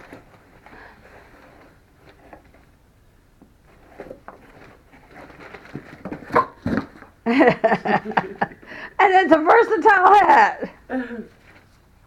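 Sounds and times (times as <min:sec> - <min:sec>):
cardboard package rustling: 0:03.8 - 0:07.2
person speaking: 0:09.0 - 0:11.3.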